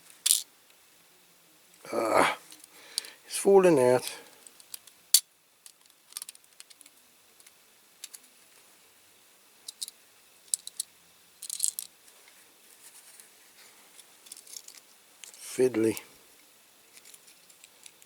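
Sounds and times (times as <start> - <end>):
model parts clicking into place: 5.6 - 8.2.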